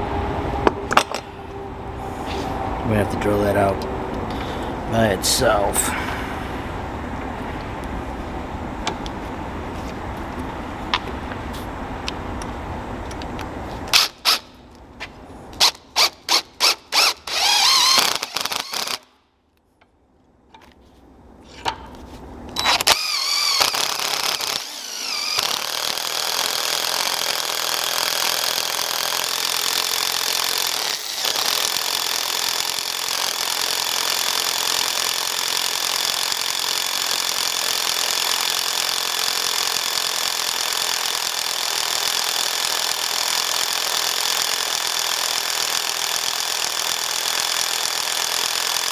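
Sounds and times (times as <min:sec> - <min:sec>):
drill bit squealing: 0:15.6 - 0:19.0, 0:22.6 - 0:28.7, 0:29.5 - 0:32.6
power drill drilling: 0:15.6 - 0:19.0, 0:22.6 - 0:48.9.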